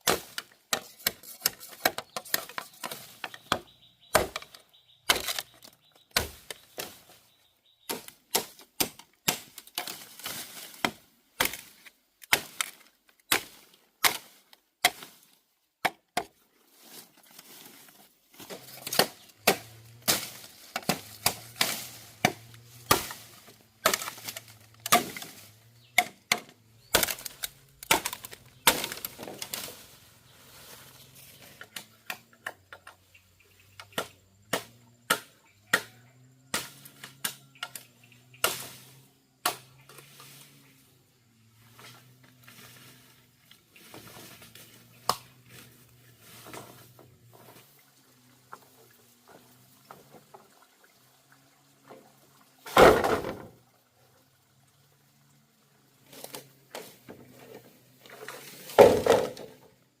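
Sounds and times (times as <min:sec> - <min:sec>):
blade chopping bamboo: 0:00.0 - 0:07.2, 0:07.8 - 0:16.4, 0:18.4 - 0:29.8, 0:33.8 - 0:40.2, 0:43.8 - 0:47.0, 0:58.4 - 0:59.5.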